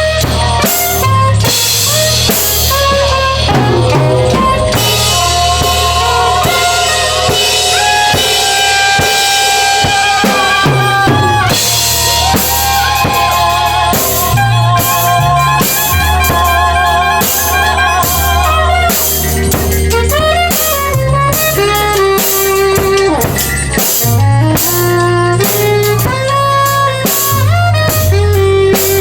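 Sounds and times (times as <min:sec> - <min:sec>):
held melodic notes: 0:00.0 - 0:28.6
deep bass line: 0:00.0 - 0:29.0
drum kit kick and snare: 0:00.0 - 0:29.0.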